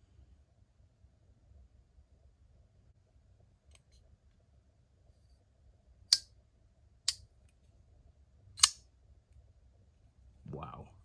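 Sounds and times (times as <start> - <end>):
folding knife blade clicks: 8.6 - 8.8.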